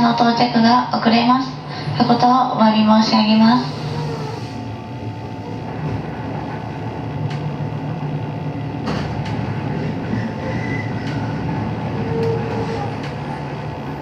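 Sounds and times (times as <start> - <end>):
low hum: 0.0 - 14.0
train wheels rumbling: 0.0 - 14.0
train wheels squealing: 10.0 - 13.5.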